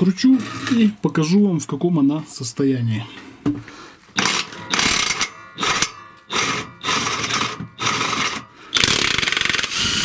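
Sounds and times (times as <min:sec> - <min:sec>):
impact wrench hammering: 0:04.2 - 0:10.0.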